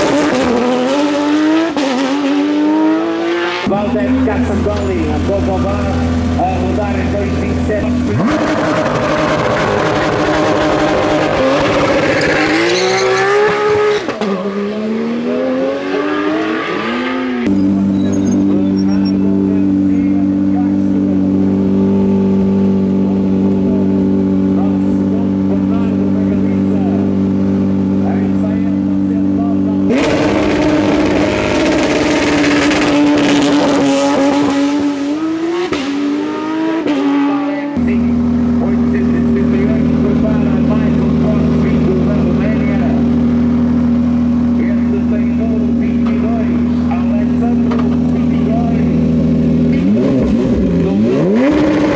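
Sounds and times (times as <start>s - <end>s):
racing car accelerating: 0.0s - 51.9s
tyre squeal: 8.1s - 14.4s, 16.4s - 19.3s.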